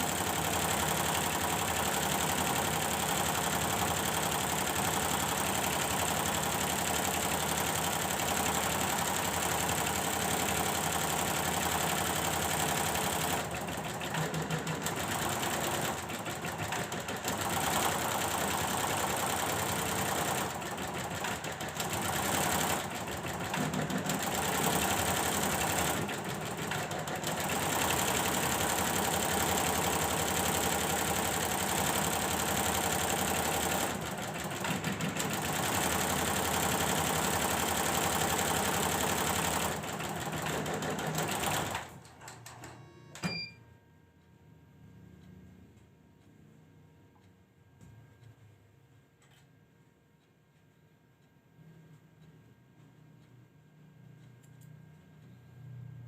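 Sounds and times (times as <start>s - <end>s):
embroidery machine stitching: 0.0s - 42.3s.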